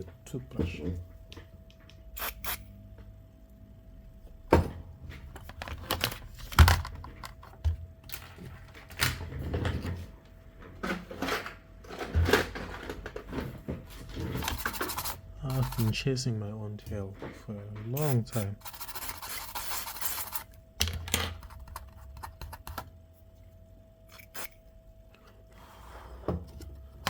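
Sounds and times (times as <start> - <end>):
toothbrush rubbing: 14.4 - 16.0, 18.0 - 20.5, 24.1 - 24.6.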